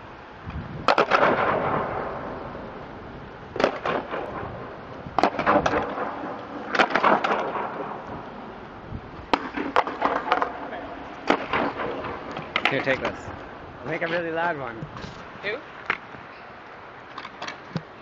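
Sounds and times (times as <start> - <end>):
skateboards clattering on ground: 0.8 - 2.2, 3.6 - 8.2, 9.2 - 13.2, 17.0 - 17.9
booming echo: 0.8 - 2.8, 3.6 - 8.4, 9.3 - 13.7.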